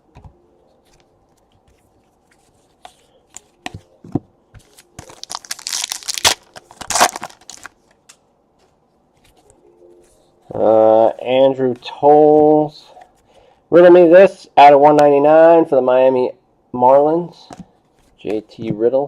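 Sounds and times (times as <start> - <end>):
foil wrapper tearing and crinkling: 5.0 - 7.8.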